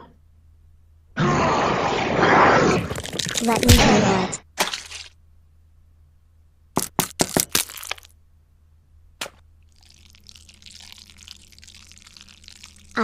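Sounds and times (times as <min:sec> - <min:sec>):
sharp cracks: 0:02.2 - 0:05.0, 0:06.8 - 0:08.1.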